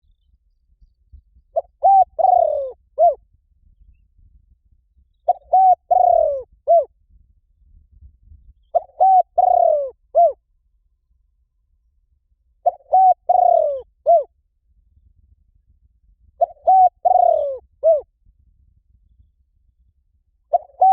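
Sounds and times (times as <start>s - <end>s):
dove cooing: 1.5s - 3.2s, 5.3s - 6.9s, 8.7s - 10.4s, 12.6s - 14.3s, 16.4s - 18.1s, 20.5s - 20.9s.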